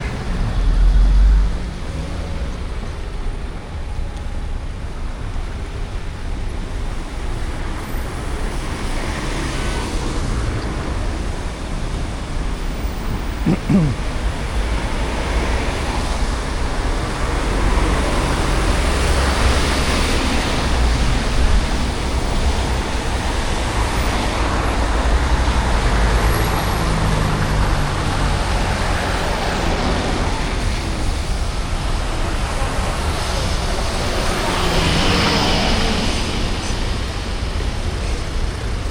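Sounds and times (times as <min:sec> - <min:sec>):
traffic rumble and hiss: 0:00.0 - 0:38.9
tyres on wet road: 0:00.0 - 0:38.9.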